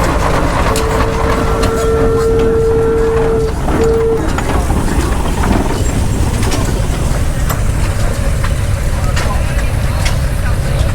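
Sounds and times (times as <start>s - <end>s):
steam whistle: 0.0s - 7.4s
loud low rumble: 0.0s - 10.0s.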